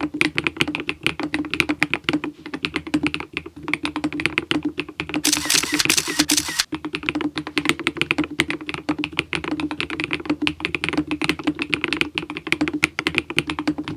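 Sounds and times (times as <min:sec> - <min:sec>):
mechanical keyboard typing: 0:05.0 - 0:06.7.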